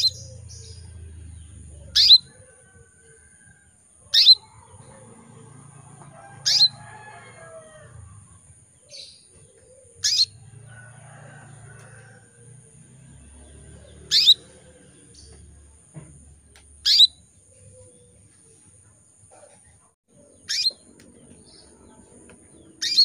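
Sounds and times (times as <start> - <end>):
canary calls: 0.0 - 1.0, 1.7 - 2.7, 4.0 - 8.3, 8.9 - 10.5, 13.4 - 15.4, 16.6 - 18.6, 20.1 - 21.9, 22.5 - 23.0.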